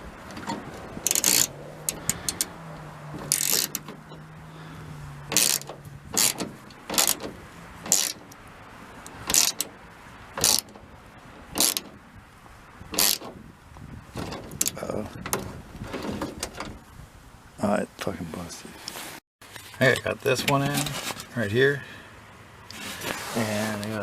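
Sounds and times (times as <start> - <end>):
ratchet wrench clicking: 1.0 - 2.5, 3.3 - 3.9, 5.3 - 7.3, 7.9 - 8.4, 9.3 - 9.7, 10.4 - 10.8, 11.6 - 11.9, 13.0 - 13.3.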